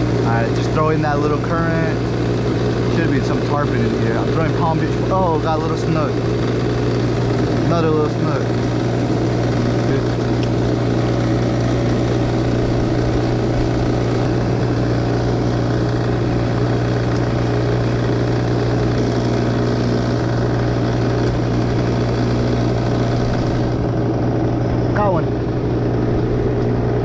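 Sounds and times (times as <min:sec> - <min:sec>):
low motor hum: 0:00.0 - 0:27.0.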